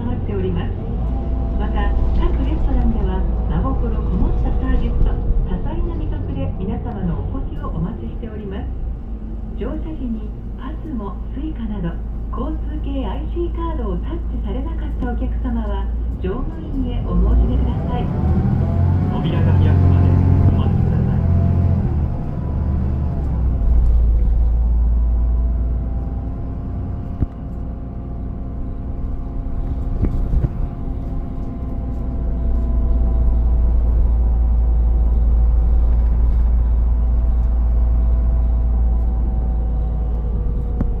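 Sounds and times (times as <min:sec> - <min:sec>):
bus engine rumble: 0:00.0 - 0:41.0
multi-tone whine: 0:23.5 - 0:41.0.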